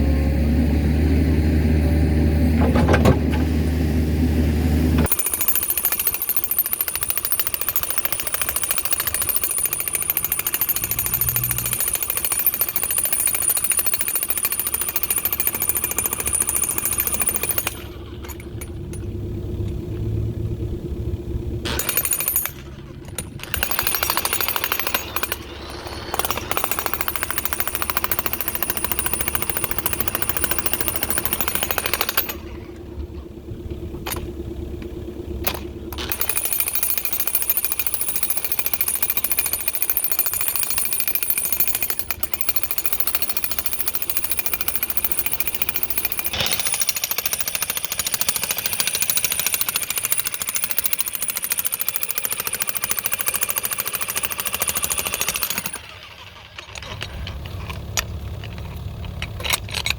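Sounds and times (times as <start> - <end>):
jackhammer hammering concrete: 5.0 - 19.2, 21.6 - 32.8, 34.0 - 57.0
machine engine running: 15.5 - 38.4.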